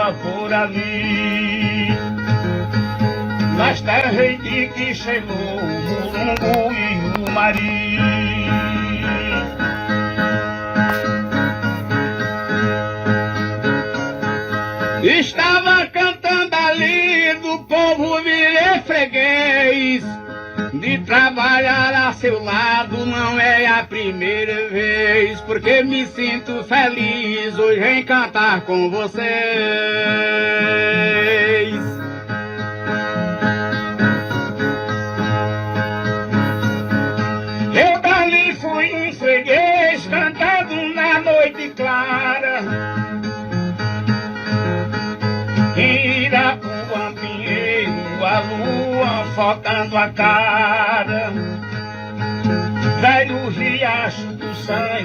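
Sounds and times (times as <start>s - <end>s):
plucked viola: 0.0s - 18.8s, 22.4s - 55.0s
person singing: 0.0s - 20.0s, 20.7s - 32.1s, 53.0s - 55.0s
rhythmic instrumental accompaniment: 0.0s - 55.0s.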